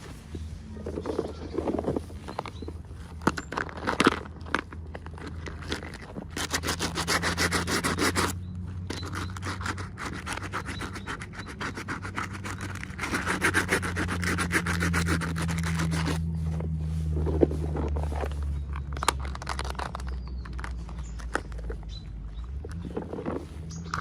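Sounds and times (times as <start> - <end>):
rapid scratchy rubbing: 5.2 - 18.6.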